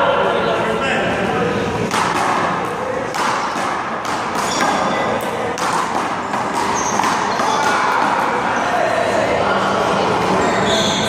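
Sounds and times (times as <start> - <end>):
handball hitting hands and wall: 1.9 - 2.5, 3.1 - 8.4.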